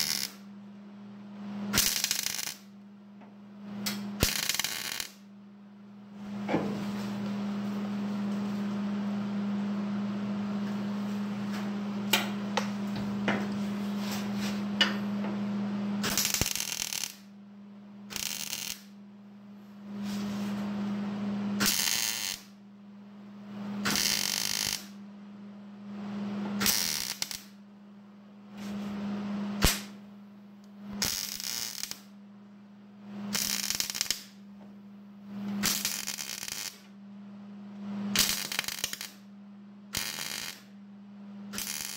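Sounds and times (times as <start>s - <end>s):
electric welder crackling: 0.0s - 0.5s, 1.7s - 2.7s, 3.8s - 5.3s, 16.0s - 17.3s, 18.1s - 19.0s, 21.6s - 22.6s, 23.8s - 25.0s, 26.6s - 27.6s, 29.6s - 30.0s, 30.9s - 32.1s, 33.2s - 34.4s, 35.5s - 36.9s, 38.1s - 39.3s, 39.9s - 40.7s, 41.5s - 41.9s
steady electrical hum: 0.0s - 41.9s.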